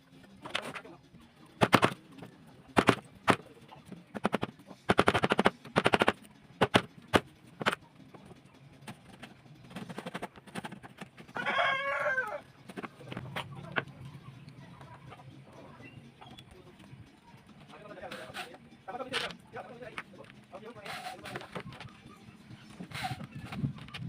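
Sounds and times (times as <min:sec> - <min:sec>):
rooster crowing: 0:11.3 - 0:12.5.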